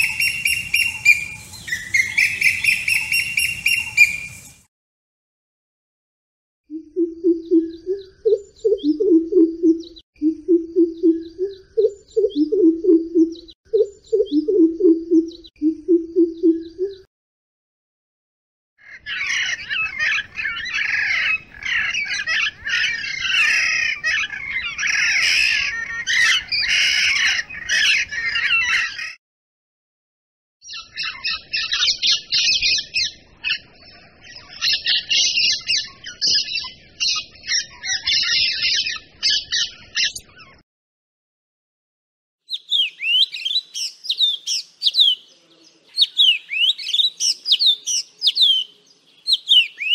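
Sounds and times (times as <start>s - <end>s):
many birds chattering: 0.0s - 4.6s, 18.8s - 29.2s, 42.6s - 49.9s
faint high chirps: 0.0s - 4.7s
low-pitched bird call: 0.0s - 4.7s, 6.7s - 17.1s
rapid high bird chirping: 0.0s - 4.7s, 42.5s - 45.3s, 45.9s - 49.9s.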